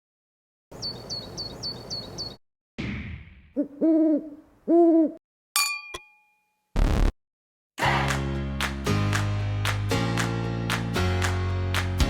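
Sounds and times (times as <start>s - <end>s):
bird chirps: 0.7s - 2.4s
owl hoots: 3.6s - 5.2s
ringing chime: 5.6s - 6.5s.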